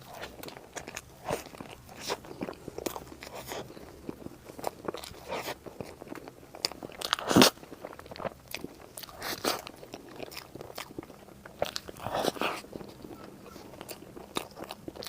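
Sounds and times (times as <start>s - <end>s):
crunchy bites and chewing: 0.0s - 15.0s.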